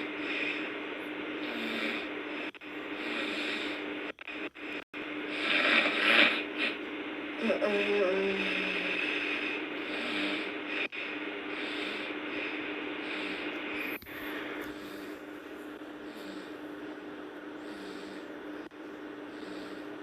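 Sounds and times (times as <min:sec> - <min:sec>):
steady low hum: 0:00.0 - 0:20.0
girl snoring: 0:01.4 - 0:03.8, 0:04.4 - 0:06.8, 0:07.4 - 0:15.1, 0:17.6 - 0:19.9.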